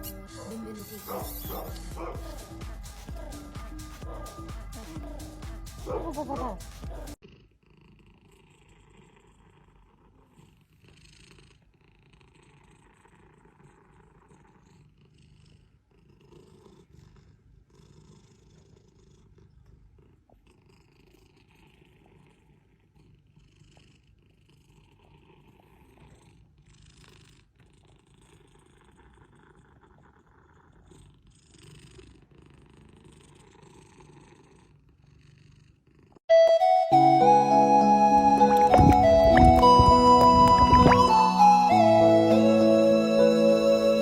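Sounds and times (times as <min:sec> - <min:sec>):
cat purring: 0:04.0 - 0:36.2.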